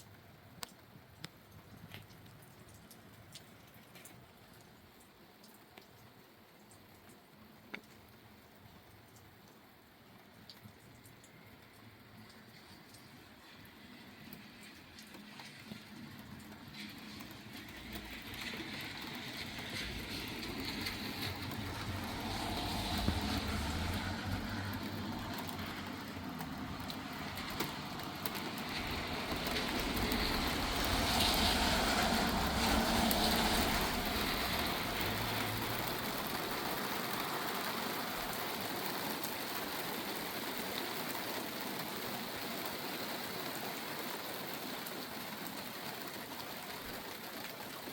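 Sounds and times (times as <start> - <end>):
rain hissing: 13.4 - 47.9.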